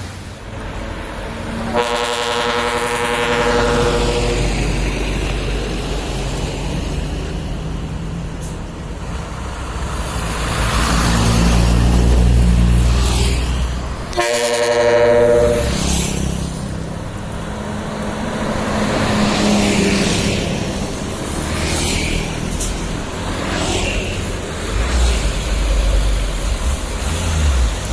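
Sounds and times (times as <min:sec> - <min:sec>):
diesel truck engine rumbling: 0:00.0 - 0:27.9
trumpet air horn blast: 0:01.7 - 0:04.5, 0:14.1 - 0:15.9.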